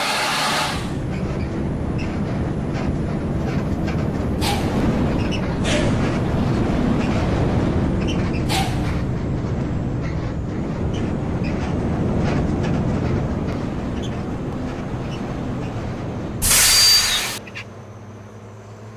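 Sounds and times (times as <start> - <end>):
bus engine and road rumble: 0.0 - 18.9
loud hiss: 16.4 - 17.4.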